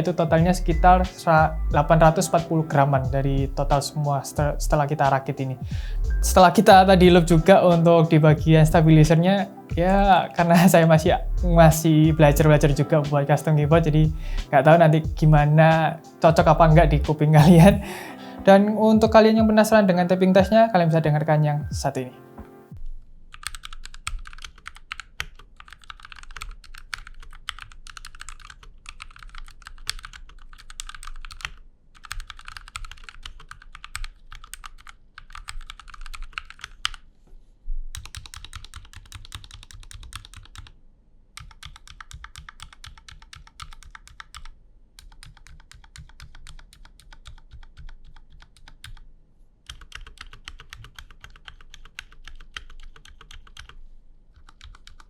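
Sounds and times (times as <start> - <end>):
damped mechanical keyboard typing: 23.3 - 37.1, 37.9 - 40.8, 41.4 - 55.0.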